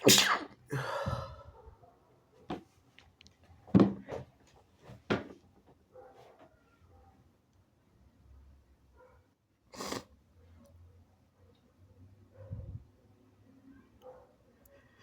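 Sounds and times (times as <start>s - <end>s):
wet sneeze: 0.0s - 1.0s, 9.8s - 10.1s.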